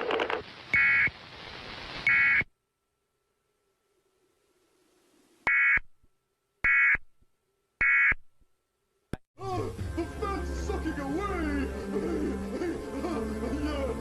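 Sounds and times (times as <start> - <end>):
two-tone data bursts: 0.7 - 1.2, 2.0 - 2.5, 5.5 - 5.9, 6.6 - 7.0, 7.8 - 8.2
faint hum: 2.1 - 9.1.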